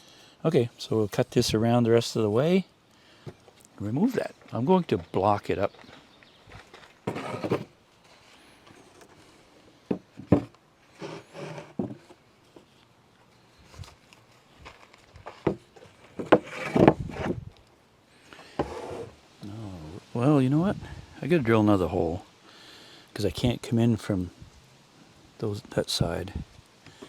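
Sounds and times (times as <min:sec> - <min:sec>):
wooden blocks knocking and scraping: 0:06.5 - 0:07.8, 0:09.9 - 0:12.7, 0:14.6 - 0:17.4, 0:18.4 - 0:19.1.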